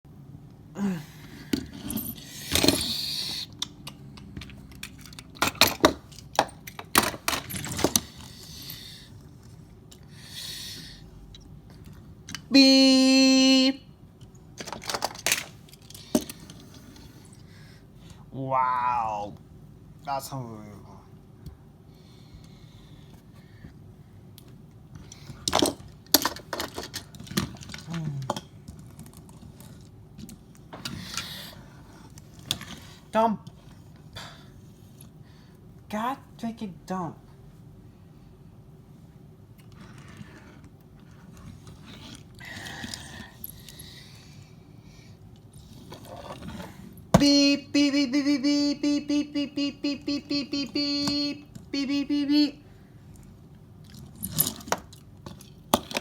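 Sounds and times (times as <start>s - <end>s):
toy cars clicking together: 1.5s - 9.1s, 14.6s - 16.9s, 25.0s - 31.5s
toy car scraping: 1.6s - 3.5s, 45.6s - 47.0s.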